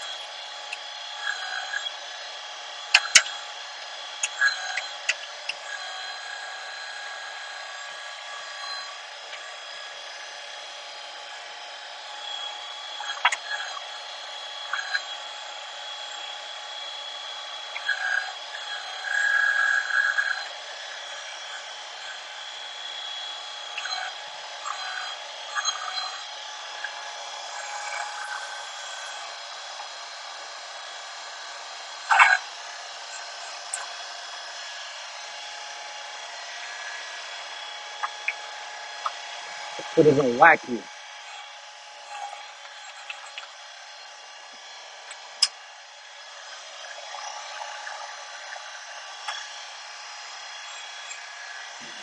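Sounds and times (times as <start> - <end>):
diesel engine at high throttle: 37.4 - 41.0.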